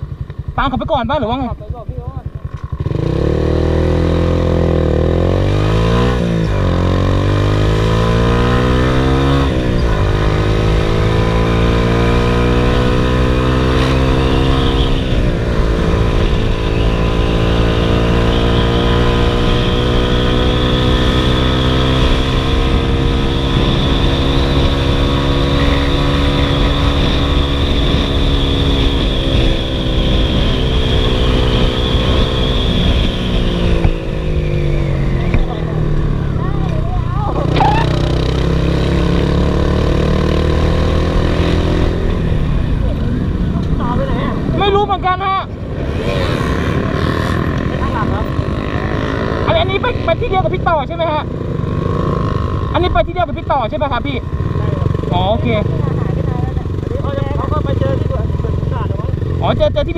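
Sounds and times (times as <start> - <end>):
motorcycle engine shifting gears: 0.0 - 44.8, 45.5 - 59.9.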